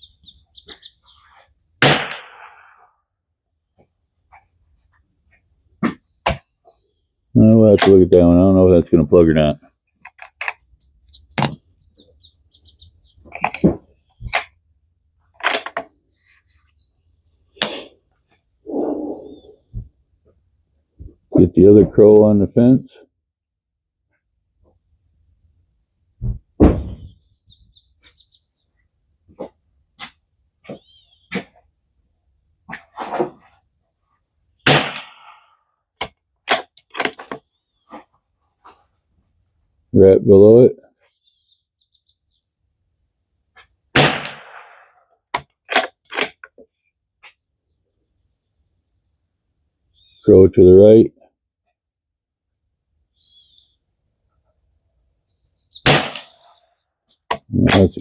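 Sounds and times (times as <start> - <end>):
bird chirping: 0.0 - 1.5, 5.9 - 7.6, 10.7 - 14.3, 15.8 - 18.0, 18.7 - 19.8, 26.9 - 28.8, 30.7 - 31.3, 40.8 - 42.5, 47.6 - 50.3, 53.1 - 58.0
rifle shot: 1.8 - 2.9, 34.6 - 35.4, 43.9 - 44.9, 55.8 - 56.4
rifle bolt clicks and knocks: 10.0 - 11.6, 36.0 - 37.4, 45.3 - 46.6
rifle bolt metallic clicks: 36.0 - 37.4, 45.7 - 46.5.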